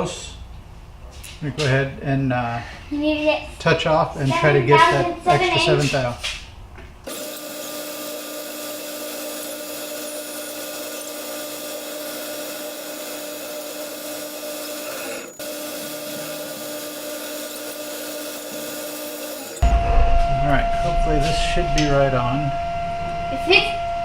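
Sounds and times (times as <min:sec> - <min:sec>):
lathe humming: 0:07.1 - 0:19.7.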